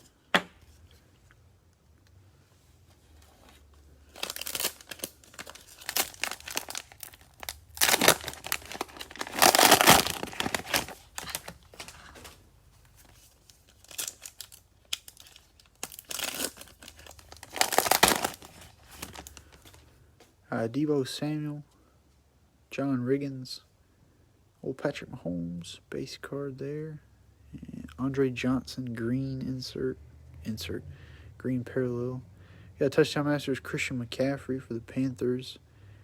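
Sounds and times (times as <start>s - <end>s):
cellophane wrapper crinkling and tearing: 3.3s - 19.8s.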